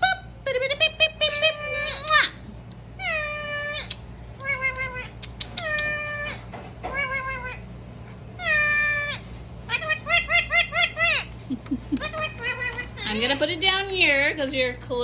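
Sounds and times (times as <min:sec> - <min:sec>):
parrot meow-like calls: 0:03.0 - 0:07.7, 0:08.4 - 0:11.4, 0:12.0 - 0:13.3.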